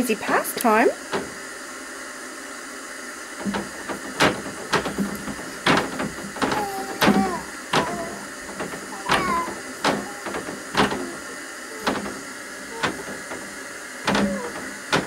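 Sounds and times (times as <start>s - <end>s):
child banging: 3.4s - 15.0s
small child voice sounds: 6.4s - 12.0s.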